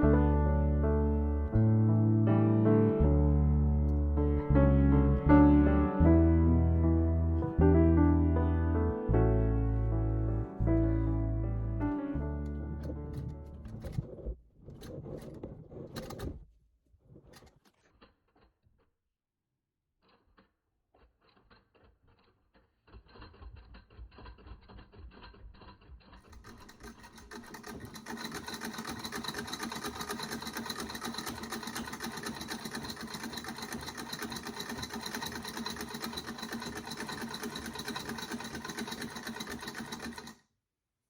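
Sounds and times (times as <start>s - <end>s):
treadle sewing machine stitching: 12.4s - 16.4s, 20.2s - 40.4s.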